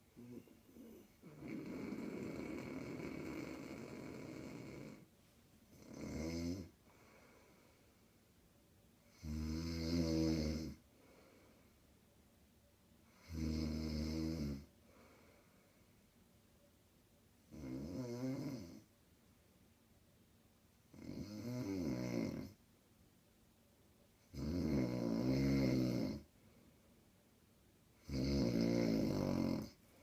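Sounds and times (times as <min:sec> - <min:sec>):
quiet breathing: 0:00.0 - 0:12.3, 0:13.0 - 0:16.5, 0:24.1 - 0:30.0
woman snoring loudly: 0:00.2 - 0:05.1, 0:05.7 - 0:06.8, 0:09.1 - 0:10.8, 0:13.2 - 0:14.7, 0:17.5 - 0:18.8, 0:20.9 - 0:22.6, 0:24.3 - 0:26.3, 0:28.0 - 0:29.8.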